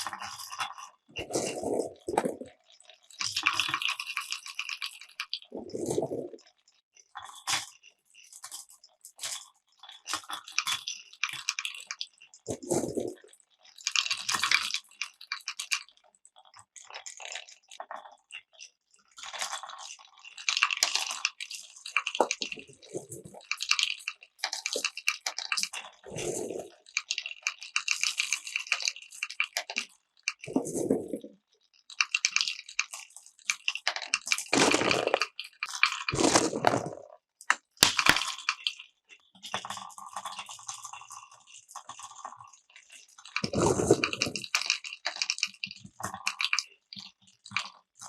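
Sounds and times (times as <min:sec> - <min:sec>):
marbles clattering through wooden blocks: 0:20.4 - 0:31.3, 0:31.9 - 0:38.7, 0:43.3 - 0:46.6.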